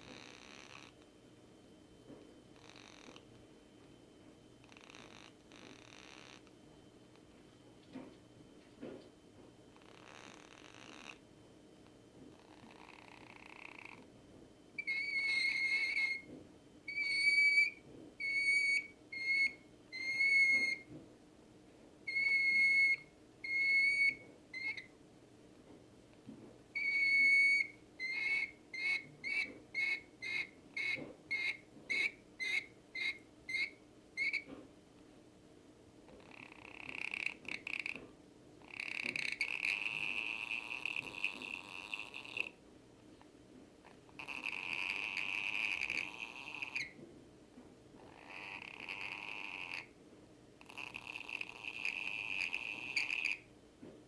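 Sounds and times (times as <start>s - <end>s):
lorikeet hissing purr: 0.0s - 1.1s, 2.5s - 3.3s, 4.6s - 6.5s, 9.7s - 11.3s, 12.3s - 14.1s, 14.8s - 16.3s, 16.9s - 20.8s, 22.1s - 24.9s, 26.8s - 34.5s, 36.1s - 38.0s, 38.6s - 42.6s, 43.8s - 47.0s, 48.0s - 50.0s, 50.6s - 53.5s
bird whistling: 14.8s - 16.3s, 16.9s - 20.8s, 22.1s - 24.9s, 26.8s - 34.5s.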